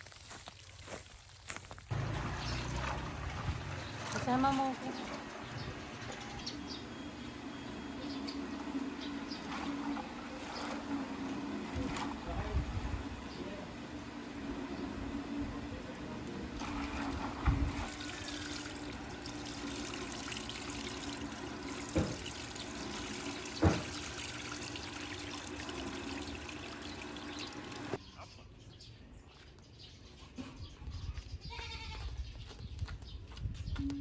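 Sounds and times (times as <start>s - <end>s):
water running: 1.9s - 12.5s, 16.2s - 28.0s.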